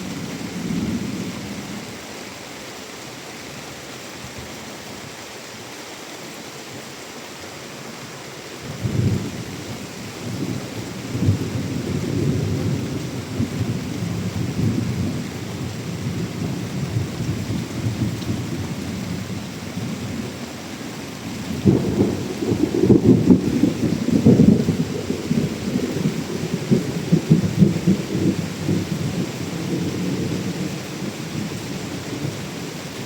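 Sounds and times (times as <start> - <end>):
heavy rain hissing: 0.0 - 33.0
rolling thunder rumble: 10.2 - 20.3, 21.4 - 32.5.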